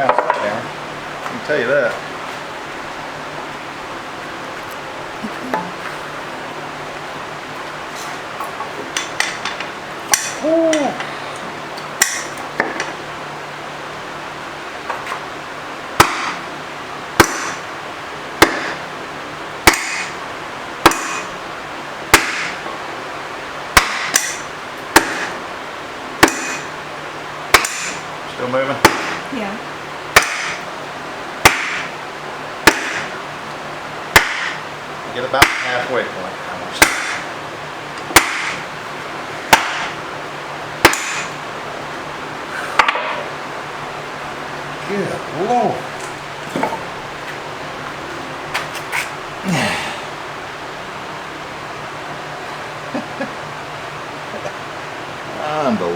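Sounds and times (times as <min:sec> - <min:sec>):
sledgehammer blows on metal: 0:20.8 - 0:21.3, 0:26.2 - 0:26.7, 0:40.8 - 0:41.4.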